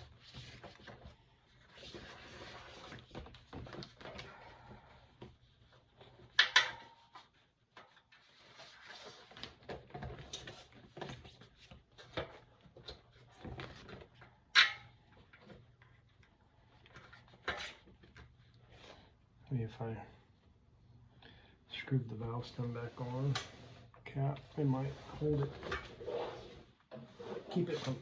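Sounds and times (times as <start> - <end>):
rubbing of rubber: 24.5 - 28.0.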